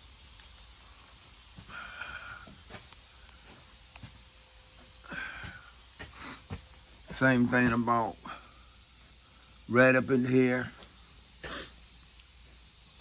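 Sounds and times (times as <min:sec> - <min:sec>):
low steady hiss: 0:00.0 - 0:13.0
faint breaths: 0:01.6 - 0:03.8, 0:05.0 - 0:06.7, 0:08.2 - 0:09.7.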